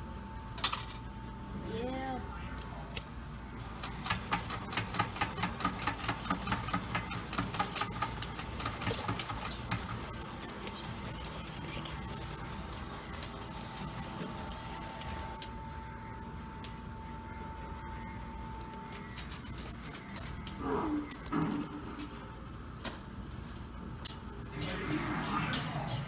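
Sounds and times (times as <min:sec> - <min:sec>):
mechanical hum: 0:00.0 - 0:26.0
metal tokens clicking: 0:03.6 - 0:11.2, 0:18.8 - 0:22.1, 0:22.8 - 0:26.0
coin pusher machine clattering: 0:03.6 - 0:15.5, 0:18.9 - 0:20.6, 0:22.8 - 0:26.0.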